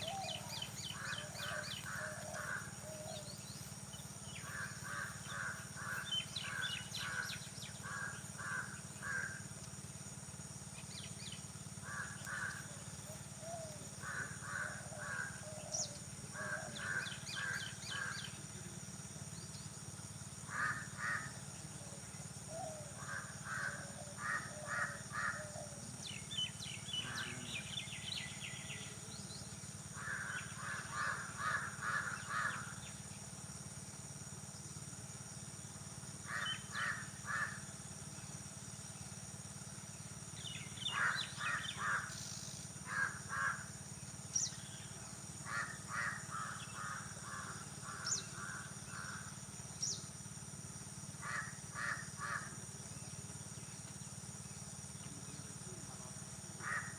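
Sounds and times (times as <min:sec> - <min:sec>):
crows cawing: 0:00.0 - 0:03.3, 0:04.3 - 0:09.4, 0:11.8 - 0:12.7, 0:13.4 - 0:15.7, 0:16.4 - 0:18.3, 0:20.5 - 0:21.4, 0:23.0 - 0:25.8, 0:30.0 - 0:32.7, 0:36.3 - 0:37.6, 0:40.8 - 0:42.2, 0:42.8 - 0:43.7, 0:45.4 - 0:49.3, 0:51.2 - 0:52.5, 0:56.6 - 0:56.9
small birds chirping: 0:00.0 - 0:08.3.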